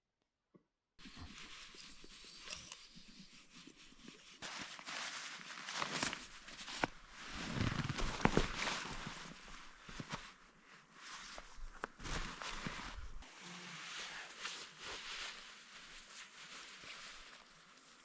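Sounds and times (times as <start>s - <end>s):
footsteps crunching in snow: 4.4s - 10.4s.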